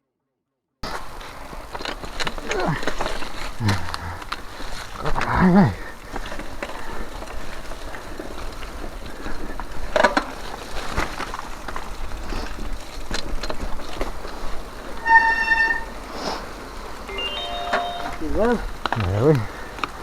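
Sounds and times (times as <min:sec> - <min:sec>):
bike rattles and knocks: 0:00.8 - 0:17.0
bike tyre and wind noise: 0:00.8 - 0:17.1, 0:18.2 - 0:20.0
short steady beep: 0:17.1 - 0:18.3.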